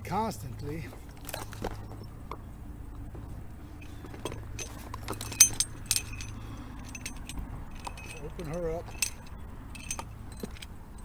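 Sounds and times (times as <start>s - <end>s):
metallic clinks of fishing gear: 3.8s - 11.0s.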